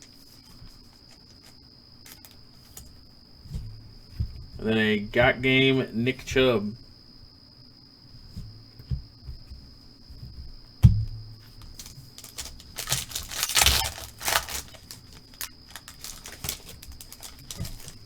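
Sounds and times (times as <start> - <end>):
thump: 10.2 - 11.4
card pack wrapper tearing and crinkling: 11.7 - 18.0.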